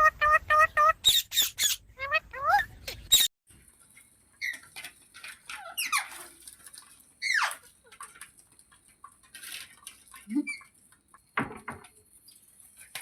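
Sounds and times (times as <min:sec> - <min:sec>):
parakeet squeaking and chirping: 0:00.0 - 0:03.3, 0:05.6 - 0:06.2.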